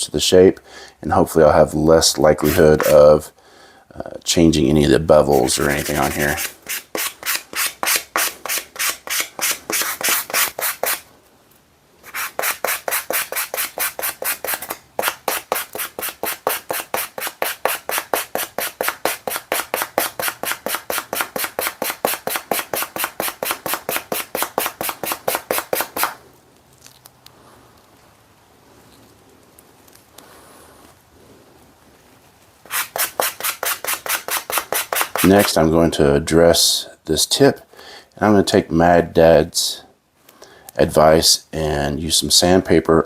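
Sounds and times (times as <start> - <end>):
sandpaper rubbing on steel: 2.3 - 3.1, 5.1 - 11.1, 12.0 - 26.2, 32.7 - 35.6.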